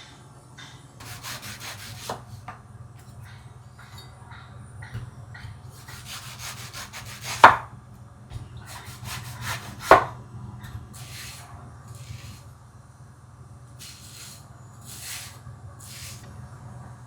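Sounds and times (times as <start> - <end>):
knife scraping on cutting board: 1.0 - 3.2, 4.9 - 7.6, 8.6 - 12.5, 13.8 - 16.3
knife knocking on wooden board: 9.8 - 10.2.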